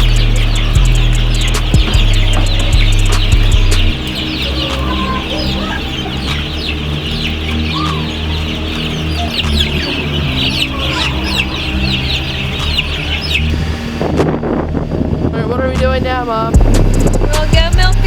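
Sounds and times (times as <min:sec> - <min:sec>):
chicken clucking: 0:00.0 - 0:14.0
chickens peeping: 0:00.0 - 0:15.4.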